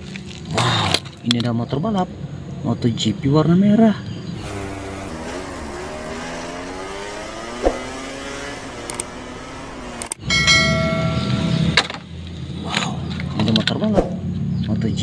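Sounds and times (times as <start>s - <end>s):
racing motorcycle engine: 4.3s - 13.3s.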